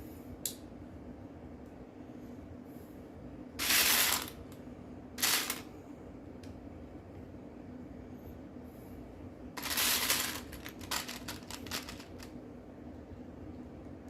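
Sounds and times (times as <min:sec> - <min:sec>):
steady low hum: 0:00.0 - 0:14.0
plastic pieces rattling: 0:03.6 - 0:04.3, 0:05.2 - 0:05.6, 0:09.6 - 0:12.3.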